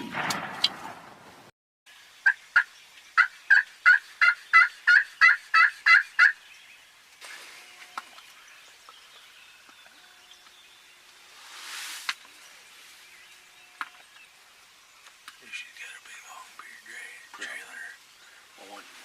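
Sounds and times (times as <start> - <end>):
turkey yelping: 2.2 - 6.4.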